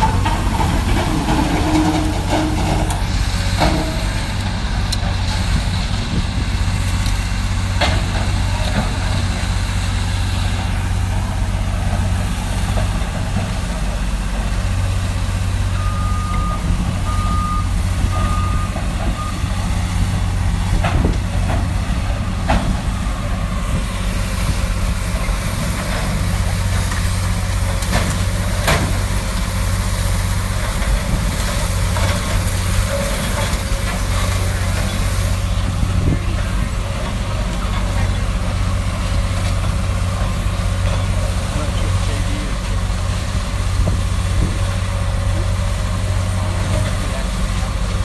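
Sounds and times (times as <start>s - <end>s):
diesel machinery drone: 0.0s - 48.0s
reversing alarm beeping: 15.7s - 19.7s.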